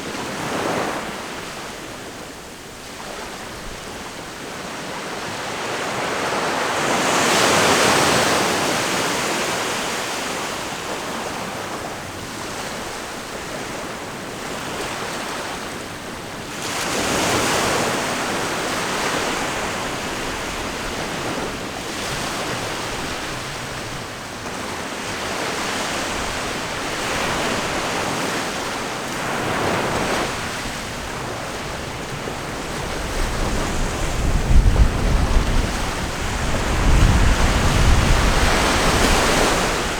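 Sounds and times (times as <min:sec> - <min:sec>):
waves breaking and washing in: 0:00.0 - 0:39.9.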